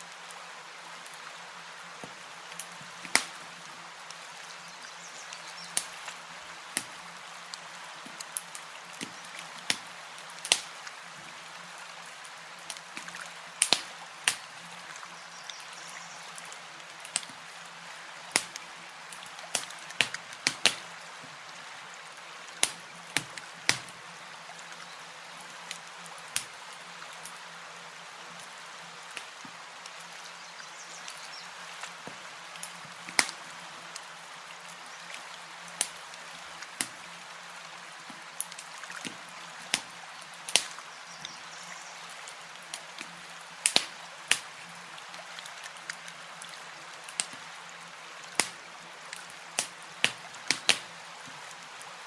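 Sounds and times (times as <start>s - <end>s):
campfire crackling: 0.0s - 52.0s.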